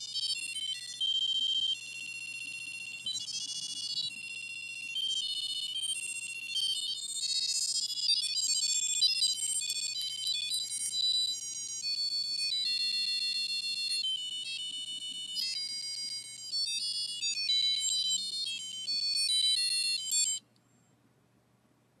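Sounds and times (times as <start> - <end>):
electronic beep tune: 0.0 - 11.2.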